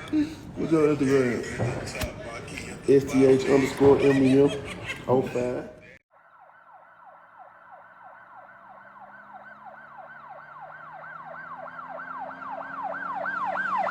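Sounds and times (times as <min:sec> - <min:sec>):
emergency siren yelping: 0:06.1 - 0:13.9.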